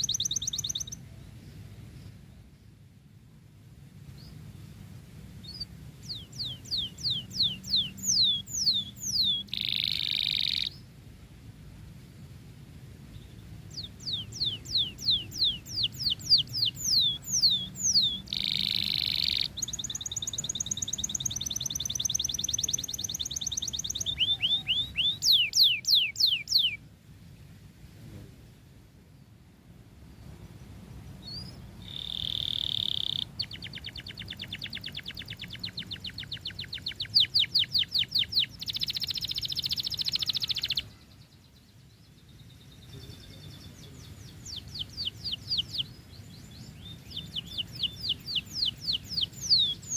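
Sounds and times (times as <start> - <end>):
canary singing: 0.0 - 1.0, 5.3 - 10.9, 13.1 - 26.8, 31.2 - 49.9.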